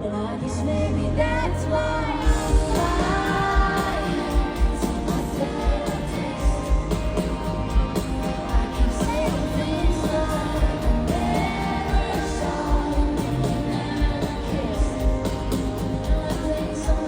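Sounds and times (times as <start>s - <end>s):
person singing: 0.0s - 7.3s, 8.2s - 17.0s.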